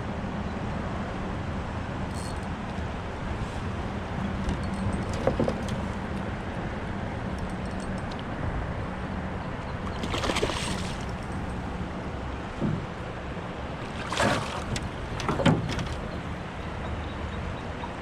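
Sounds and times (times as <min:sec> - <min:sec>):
river water: 0:00.0 - 0:18.0
wind: 0:00.0 - 0:18.0.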